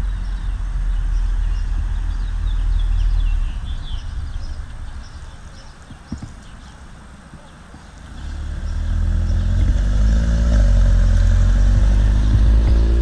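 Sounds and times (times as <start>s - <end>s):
birds chirping: 0.0s - 13.0s
car engine rumbling: 0.0s - 13.0s.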